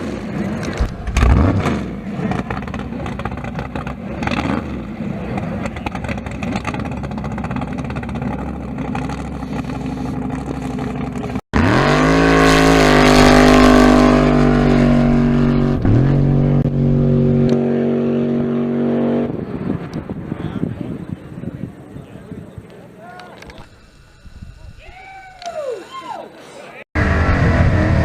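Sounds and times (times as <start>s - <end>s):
race car engine revving: 0.0s - 20.3s, 27.0s - 28.0s
rumble of engines: 0.0s - 24.8s, 27.0s - 28.0s.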